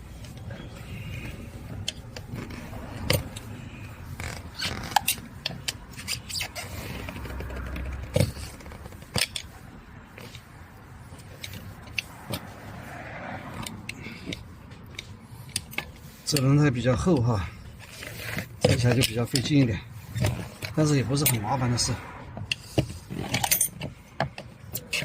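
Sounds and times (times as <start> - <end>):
tyre scraping on wheel rim: 15.2 - 25.0.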